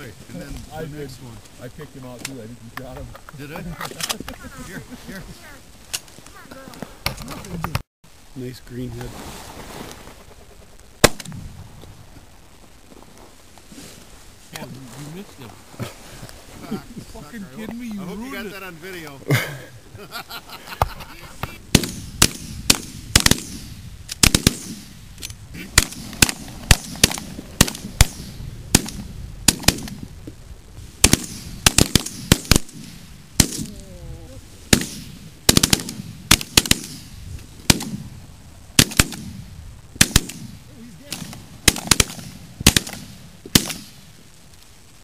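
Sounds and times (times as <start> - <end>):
shotgun fire: 11.0 - 11.3, 21.7 - 25.0, 25.6 - 30.0, 31.0 - 33.7, 34.7 - 38.1, 38.8 - 39.4, 40.0 - 44.0.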